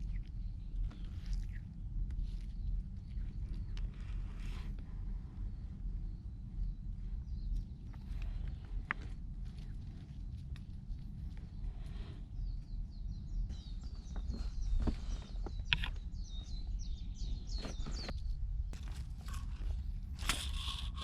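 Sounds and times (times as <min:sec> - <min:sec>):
steady low rumble: 0:00.0 - 0:21.0
bird chirping: 0:11.2 - 0:18.8.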